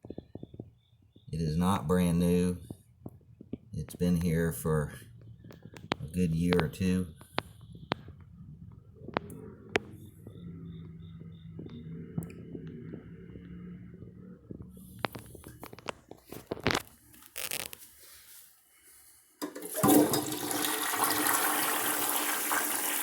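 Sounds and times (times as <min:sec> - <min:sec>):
toilet flushing: 0:19.4 - 0:23.0.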